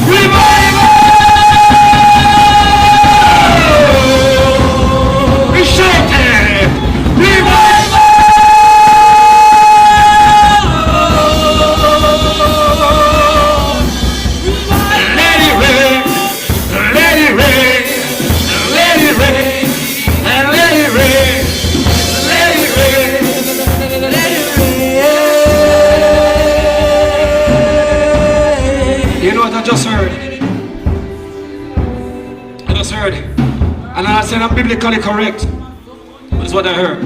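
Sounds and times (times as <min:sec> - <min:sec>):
person singing long notes: 0:00.0 - 0:05.6, 0:07.3 - 0:30.8
band accompaniment: 0:00.0 - 0:37.0.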